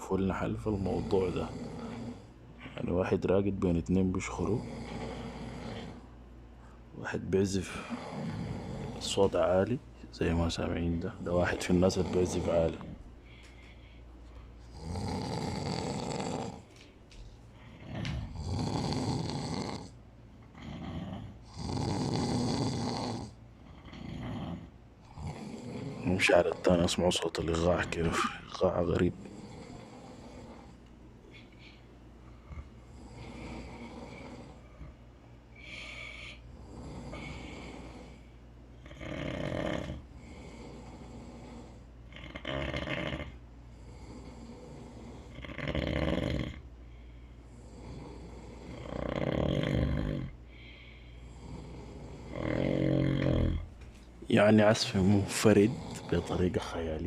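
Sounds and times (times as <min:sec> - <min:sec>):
man snoring loudly: 0:00.0 - 0:02.3, 0:04.3 - 0:06.1, 0:07.6 - 0:09.4, 0:11.0 - 0:13.0, 0:14.7 - 0:16.7, 0:17.7 - 0:30.8, 0:32.5 - 0:35.0, 0:35.6 - 0:46.6, 0:47.5 - 0:50.4, 0:51.2 - 0:53.7, 0:54.3 - 0:57.0
hissing breaths: 0:50.4 - 0:53.3, 0:54.6 - 0:56.8.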